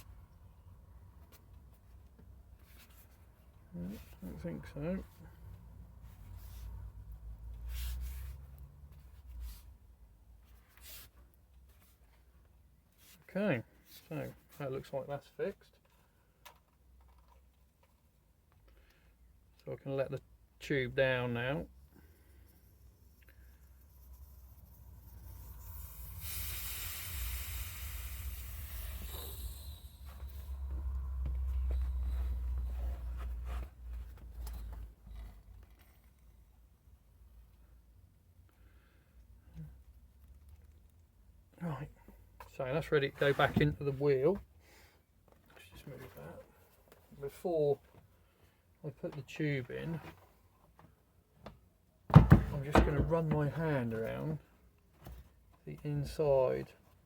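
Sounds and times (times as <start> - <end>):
air hissing from tube valve: 24.6 - 30.7.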